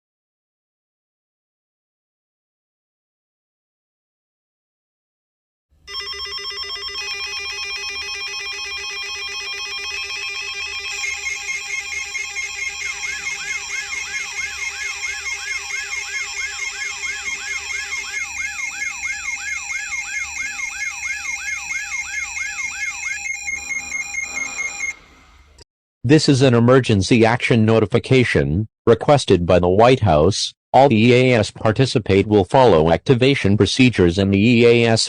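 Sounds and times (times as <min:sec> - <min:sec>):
siren-like warble: 0:05.9 - 0:25.6
electronic beeping alert tones: 0:08.7 - 0:25.4.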